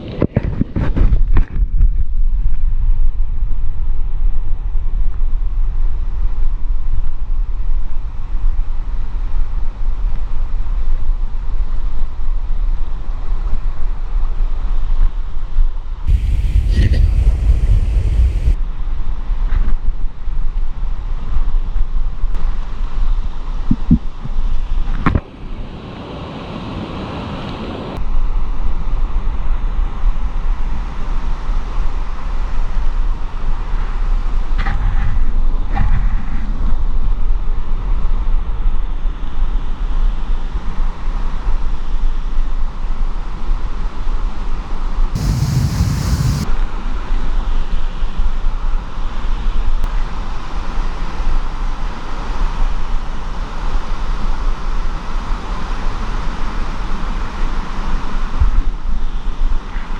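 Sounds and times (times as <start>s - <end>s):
loud rushing noise with low rumble: 16.1s - 18.6s, 45.2s - 46.6s.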